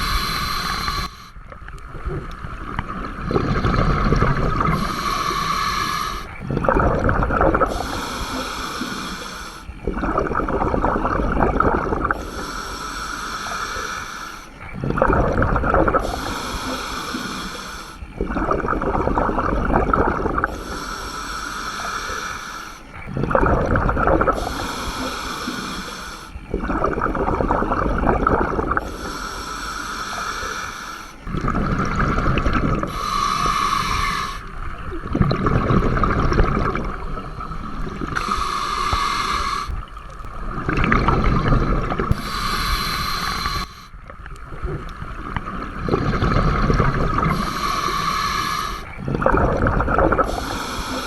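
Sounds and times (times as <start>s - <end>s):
regulator inhale hiss: 0.0s - 1.4s, 3.5s - 6.4s, 7.7s - 9.8s, 12.1s - 14.8s, 16.0s - 18.1s, 20.5s - 23.0s, 24.3s - 26.5s, 28.7s - 31.3s, 32.7s - 34.6s, 36.8s - 39.9s, 41.2s - 44.0s, 46.2s - 49.0s, 50.2s - 51.0s
exhaled bubbles gurgling: 0.0s - 51.0s.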